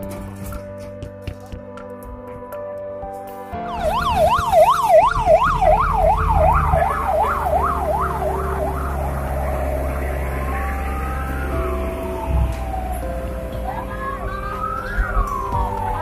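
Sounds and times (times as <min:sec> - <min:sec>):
emergency siren yelping: 0:03.6 - 0:16.0
low engine rumble: 0:03.8 - 0:16.0.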